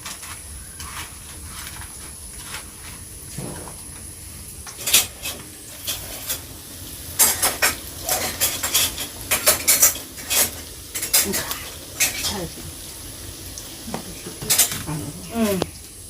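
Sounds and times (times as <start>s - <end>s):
metal utensil scraping a pot: 7.2s - 12.4s.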